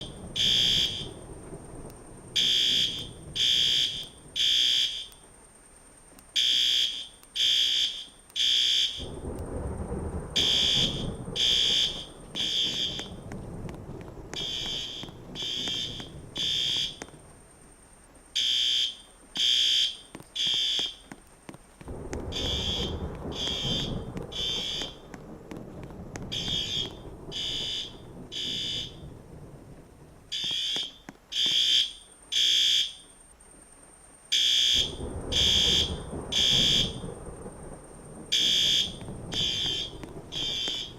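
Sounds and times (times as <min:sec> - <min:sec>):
fire alarm horn blasts: 0:00.1 - 0:01.2, 0:02.4 - 0:05.2, 0:06.4 - 0:09.2, 0:10.4 - 0:13.1, 0:14.4 - 0:17.0, 0:18.4 - 0:21.0, 0:22.3 - 0:25.0, 0:26.3 - 0:29.1, 0:30.3 - 0:33.1, 0:34.3 - 0:37.1, 0:38.3 - 0:40.9
low rumble: 0:09.0 - 0:17.5, 0:21.9 - 0:30.3, 0:34.8 - 0:40.9.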